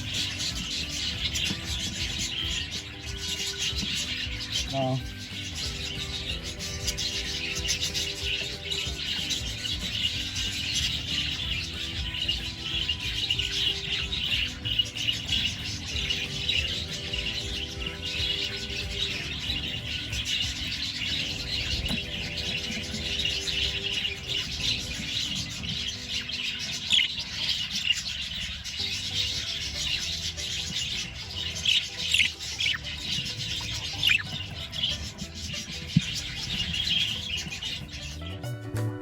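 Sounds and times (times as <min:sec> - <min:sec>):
budgerigars chattering: 0:00.0 - 0:38.5
music with low held tones: 0:00.0 - 0:39.0.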